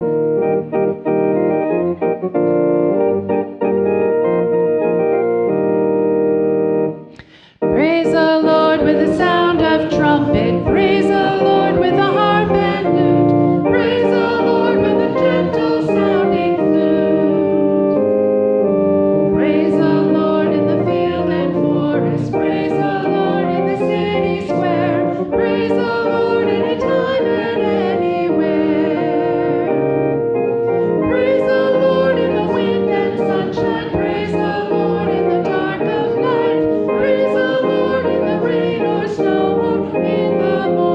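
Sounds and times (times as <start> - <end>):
keyboard accompaniment: 0.0 - 40.9
congregation singing a hymn: 6.7 - 40.9.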